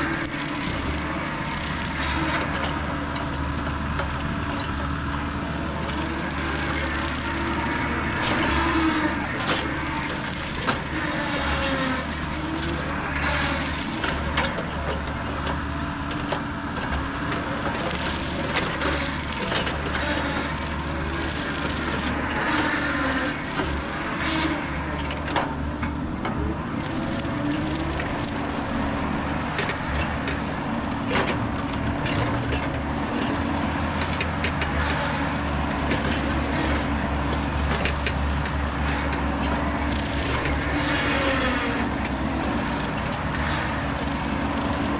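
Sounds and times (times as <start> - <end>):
woody stems snapping: 0.0 - 2.4, 5.8 - 14.5, 17.4 - 24.7, 26.7 - 31.3, 33.1 - 44.9
brush cutter chopping brush: 0.0 - 2.8, 5.6 - 14.7, 17.0 - 25.4, 26.6 - 31.6, 32.2 - 44.9
excavator engine running: 0.0 - 44.9.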